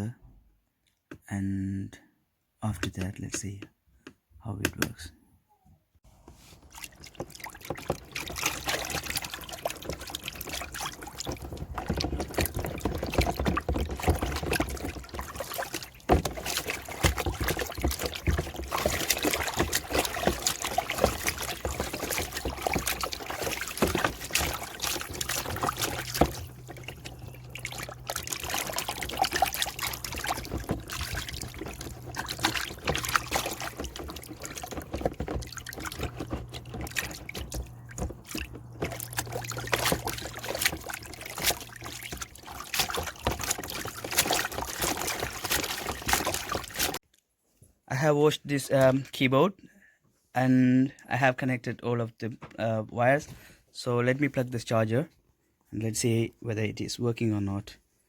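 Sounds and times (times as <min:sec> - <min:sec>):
tap water splashing on keyboard: 0:06.6 - 0:47.0
low steady hum: 0:07.4 - 0:46.8.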